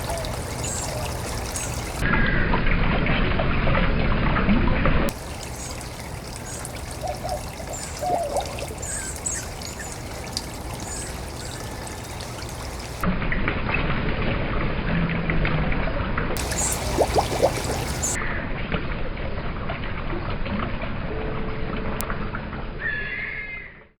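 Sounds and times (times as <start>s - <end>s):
small birds chirping: 0.0s - 2.0s, 5.1s - 13.0s, 16.4s - 18.2s
water trickling: 0.0s - 2.0s, 5.1s - 13.1s, 16.4s - 18.2s.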